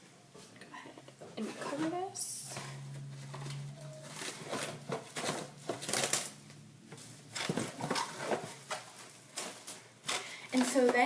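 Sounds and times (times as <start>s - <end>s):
low steady hum: 0.0s - 11.0s
plastic wrap crinkling: 1.4s - 11.0s.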